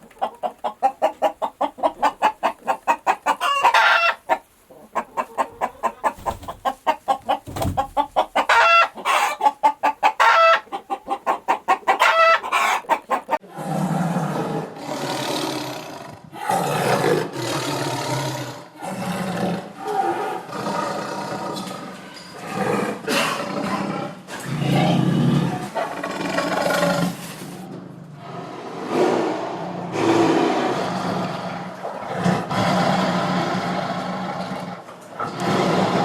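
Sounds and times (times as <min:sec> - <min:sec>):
chickens clucking: 0:00.0 - 0:13.4
chicken squawks: 0:00.1 - 0:13.4
deep rough roaring: 0:28.2 - 0:36.0.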